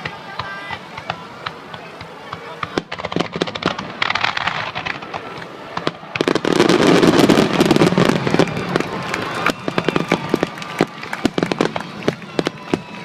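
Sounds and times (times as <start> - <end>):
fireworks bursting and crackling: 0.0 - 13.0.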